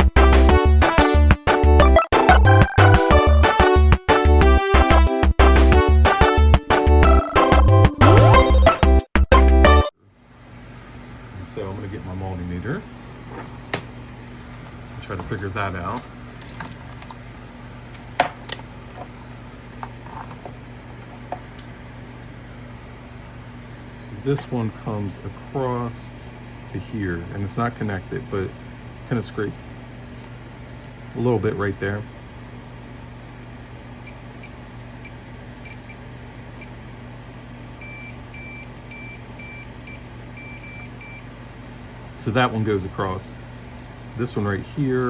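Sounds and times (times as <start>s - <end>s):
low electrical hum: 9.9s - 45.0s.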